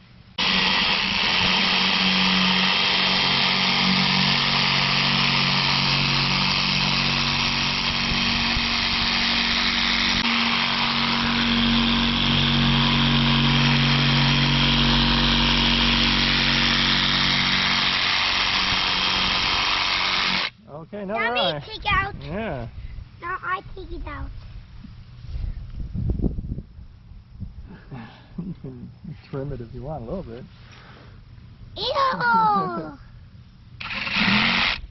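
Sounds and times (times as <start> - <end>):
reciprocating saw cutting pumpkin: 0.4 - 20.6, 33.8 - 34.9.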